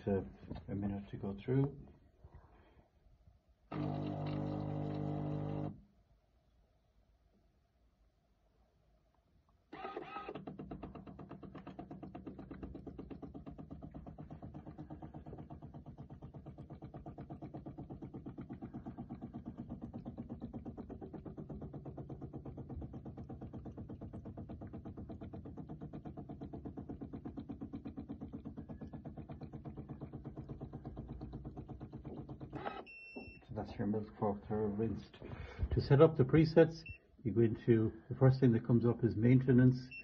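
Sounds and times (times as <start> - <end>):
coffee maker pump humming: 3.7 - 5.8, 9.7 - 33.7.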